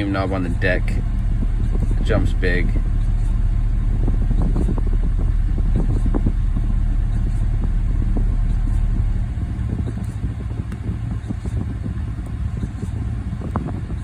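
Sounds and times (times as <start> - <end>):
subwoofer deep bass: 0.0 - 14.0.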